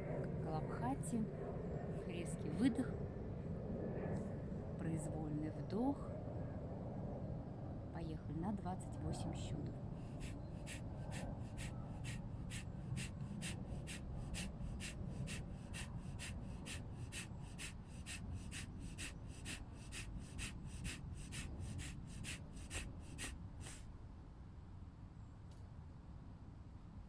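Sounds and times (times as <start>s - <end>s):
forceful nasal exhalations: 9.9s - 23.9s.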